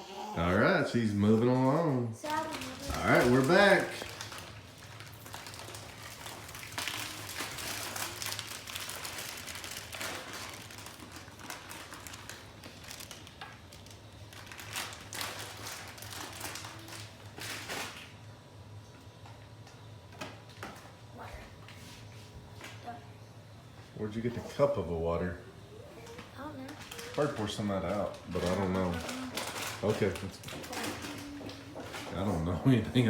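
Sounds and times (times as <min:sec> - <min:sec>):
packaging rustling and crinkling: 0:01.2 - 0:18.3, 0:26.0 - 0:33.0.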